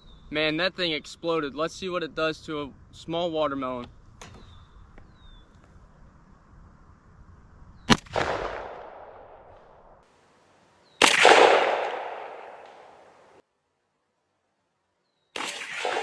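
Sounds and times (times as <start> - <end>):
shotgun blasts with echo: 7.9 - 9.6, 11.0 - 13.4, 15.4 - 16.0.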